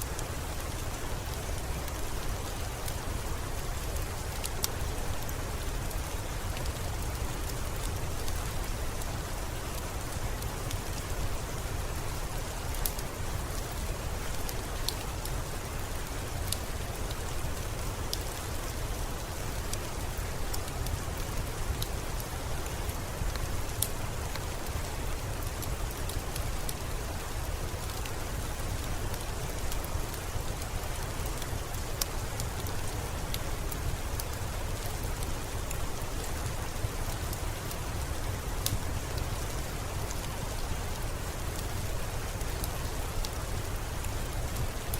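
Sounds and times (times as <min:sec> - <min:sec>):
steady rain falling: 0:00.0 - 0:44.9
wood fire crackling and popping: 0:12.5 - 0:18.6, 0:19.3 - 0:44.9.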